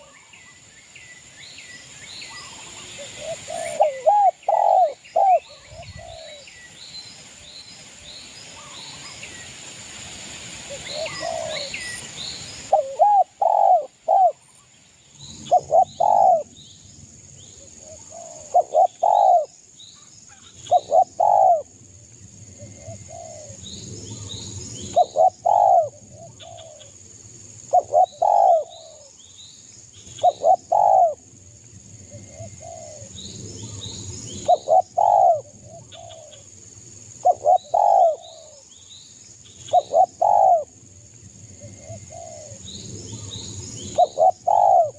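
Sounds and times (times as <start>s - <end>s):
dove cooing: 2.8s - 6.4s, 10.7s - 11.8s, 12.7s - 14.4s, 15.4s - 16.5s, 17.8s - 19.5s, 20.7s - 21.7s, 22.6s - 23.6s, 24.9s - 27.0s, 27.7s - 29.1s, 30.2s - 31.2s, 32.1s - 33.2s, 34.4s - 36.5s, 37.2s - 38.6s, 39.7s - 40.7s, 41.6s - 44.9s.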